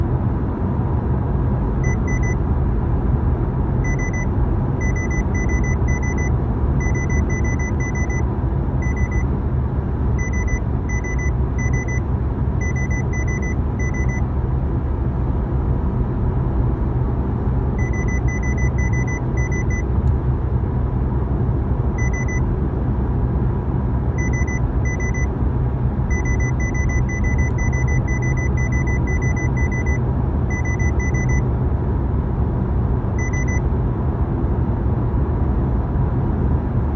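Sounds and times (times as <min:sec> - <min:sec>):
car rumble: 0:00.0 - 0:36.9
high-pitched electronic beeps: 0:01.8 - 0:02.4, 0:03.9 - 0:08.2, 0:08.8 - 0:09.2, 0:10.2 - 0:12.0, 0:12.6 - 0:14.2, 0:17.8 - 0:19.8, 0:22.0 - 0:22.4, 0:24.2 - 0:25.3, 0:26.1 - 0:31.4, 0:33.2 - 0:33.6.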